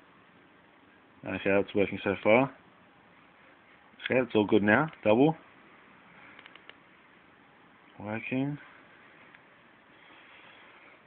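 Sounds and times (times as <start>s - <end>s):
faint click: 6.3s - 6.8s.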